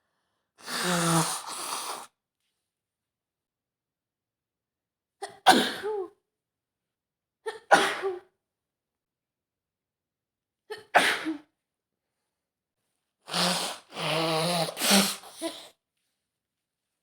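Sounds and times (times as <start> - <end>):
woman sneezing: 10.7 - 11.5, 13.3 - 15.7.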